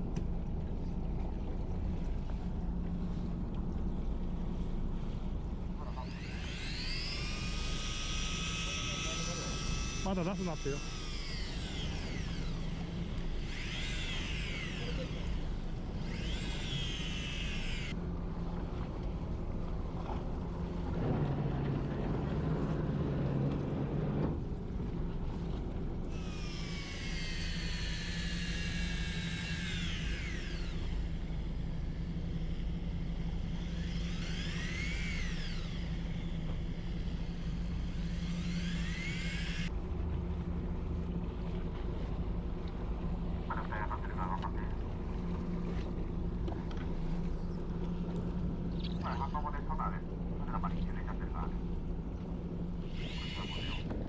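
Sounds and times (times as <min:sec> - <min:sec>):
boat engine humming: 0:00.0 - 0:54.0
high whining tones gliding: 0:05.7 - 0:18.0, 0:26.1 - 0:39.7, 0:47.0 - 0:54.0.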